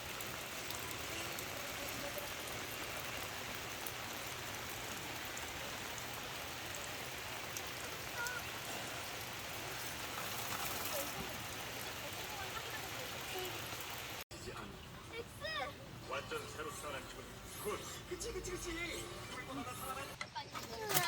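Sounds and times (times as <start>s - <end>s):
stream rushing over rocks: 0.0s - 14.2s
faint voice: 7.8s - 8.9s.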